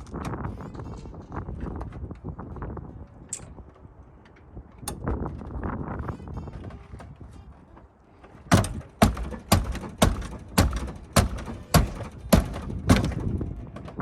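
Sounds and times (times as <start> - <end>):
sharp strikes on car door: 8.5 - 13.4.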